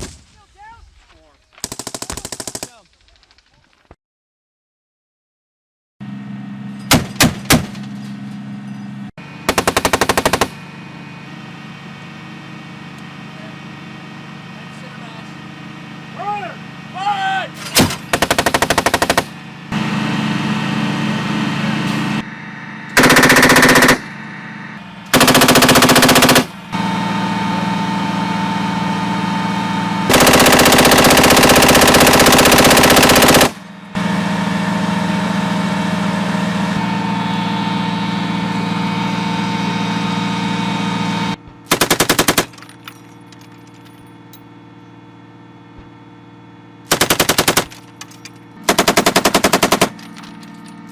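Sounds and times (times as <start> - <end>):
machine gun bursts: 1.6 - 3.4, 9.5 - 10.6, 17.8 - 19.3, 23.0 - 24.0, 25.1 - 26.5, 30.1 - 33.6, 41.7 - 42.9, 46.9 - 50.5.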